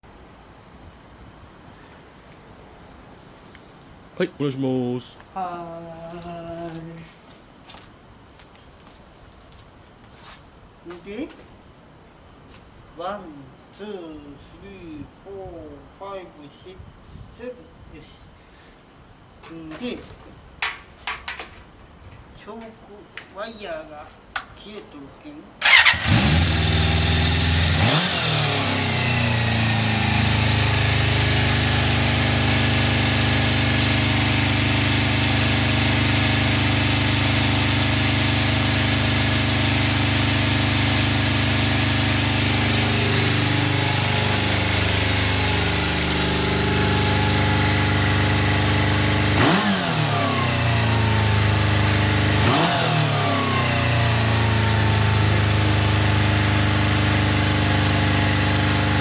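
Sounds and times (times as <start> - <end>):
motorcycle engine idling and revving: 25.6 - 59.0.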